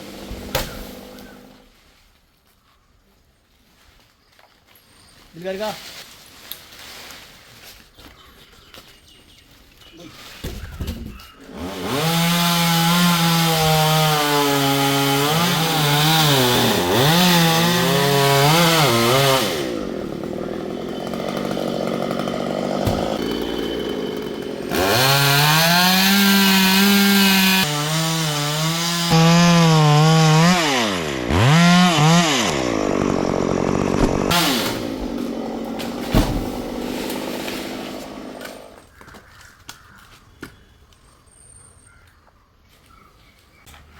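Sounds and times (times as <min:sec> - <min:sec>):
chainsaw cutting wood: 0:00.0 - 0:01.7, 0:11.5 - 0:38.9.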